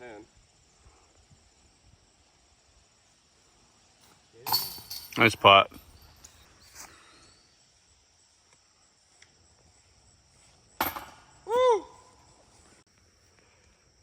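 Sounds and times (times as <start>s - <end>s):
high insect trill: 0.0s - 14.0s
disc striking metal chains: 4.0s - 6.9s, 10.8s - 11.4s
person shouting: 11.5s - 12.1s.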